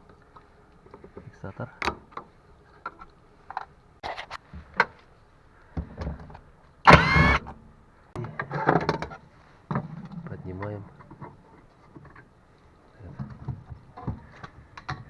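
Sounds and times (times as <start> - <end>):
loud squeak: 6.9 - 7.5.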